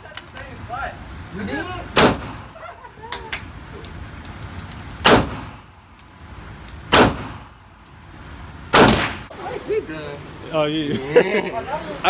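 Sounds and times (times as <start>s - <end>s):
gunshots with echo: 2.0s - 2.5s, 5.0s - 5.7s, 6.9s - 7.4s, 8.7s - 9.3s
sharp clicks: 3.2s - 5.4s, 6.0s - 9.3s.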